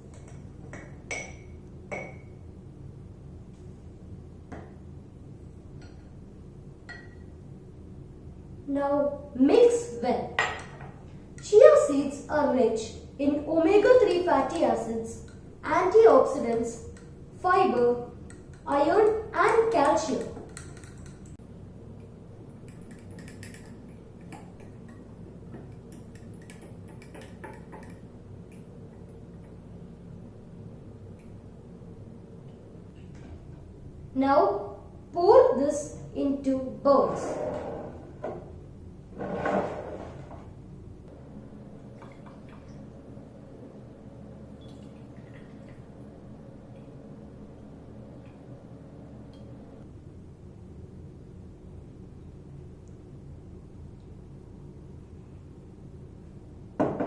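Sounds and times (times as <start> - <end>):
steady low hum: 0.0 - 56.8
kitchenware clinking against bowl: 0.1 - 2.3, 22.6 - 28.1
spoon clinking against bowl: 6.9 - 7.2, 22.6 - 25.1.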